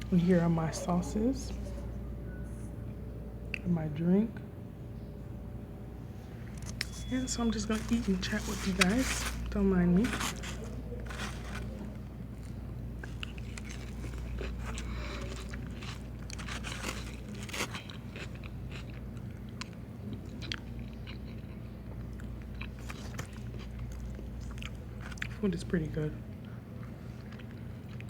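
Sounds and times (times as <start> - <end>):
crunchy chewing: 6.2 - 25.4, 26.4 - 28.0.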